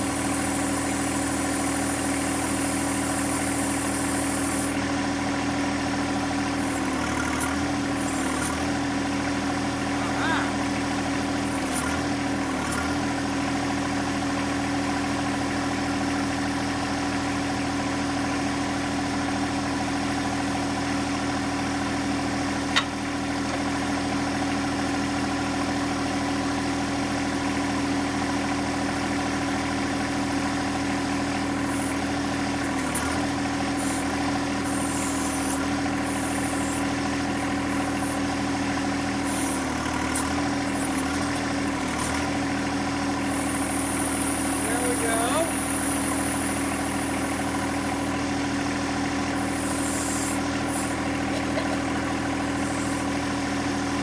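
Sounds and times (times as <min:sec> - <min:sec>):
tractor diesel engine running: 0:00.0 - 0:54.0
sharp click: 0:22.7 - 0:23.0.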